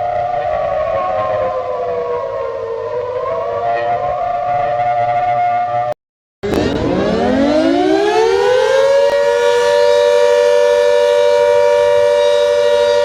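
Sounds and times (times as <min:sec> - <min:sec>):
air-raid siren wailing: 0:00.0 - 0:13.0.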